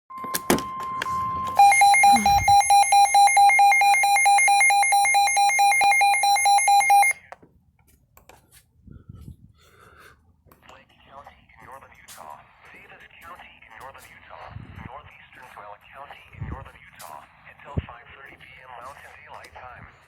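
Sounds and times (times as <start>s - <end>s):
steady electronic tone: 0.1s - 7.1s
rapidly pulsing beep: 0.1s - 7.2s.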